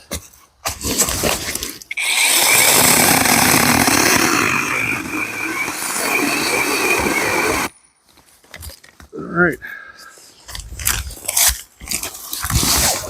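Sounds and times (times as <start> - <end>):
chainsaw chain rasping wood: 1.0 - 7.7
electric motor whine: 2.0 - 7.7.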